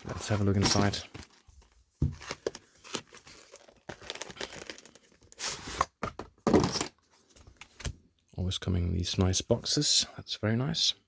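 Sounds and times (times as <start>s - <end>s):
packaging crinkling and rustling: 0.0s - 5.9s.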